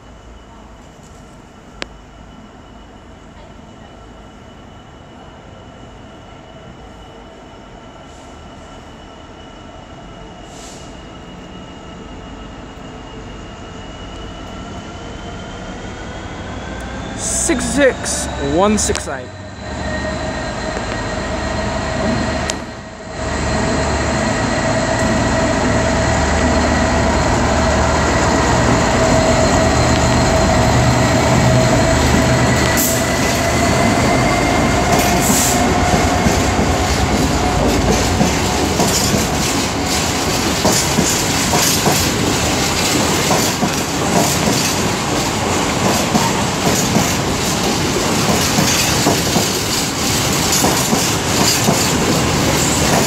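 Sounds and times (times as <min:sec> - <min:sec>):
diesel locomotive passing: 0:00.0 - 0:53.0
freight wagons clicking over rail joints: 0:34.9 - 0:53.0.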